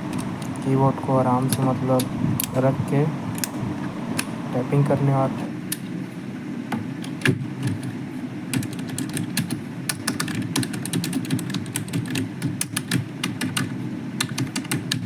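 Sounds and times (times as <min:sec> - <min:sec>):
keyboard keys clicking: 0:01.3 - 0:02.7, 0:06.8 - 0:15.0.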